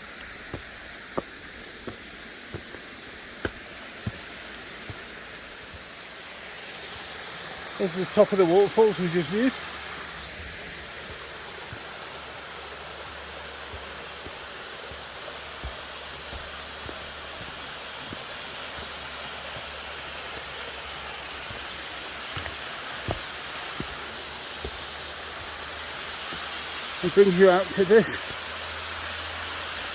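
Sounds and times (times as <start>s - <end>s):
waterfall rushing: 0.0s - 29.9s.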